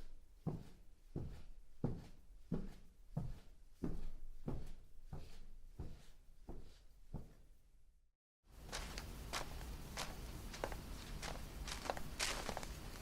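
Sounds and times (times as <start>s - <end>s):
heavy footsteps: 8.6s - 13.0s.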